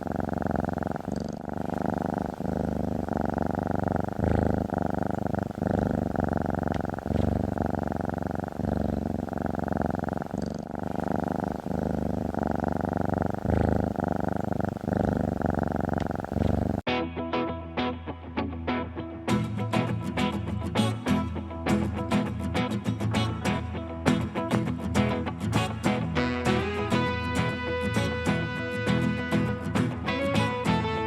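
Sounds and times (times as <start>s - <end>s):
cat purring: 0.0s - 16.9s.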